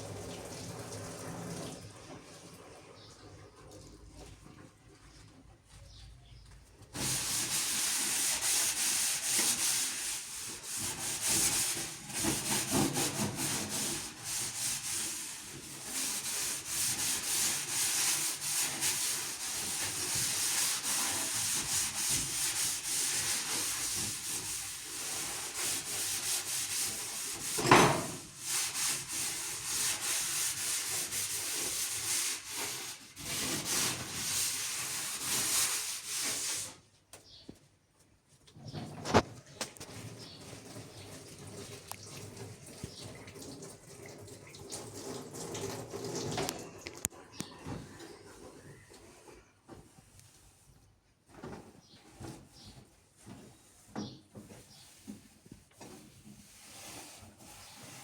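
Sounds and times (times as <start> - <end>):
rough rubbing and scraping: 7.0 - 36.7.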